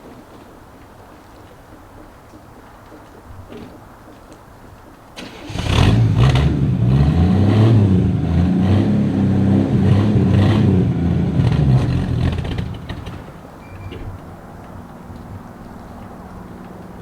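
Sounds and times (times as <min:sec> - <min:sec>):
car engine starting and revving: 0:05.2 - 0:14.4.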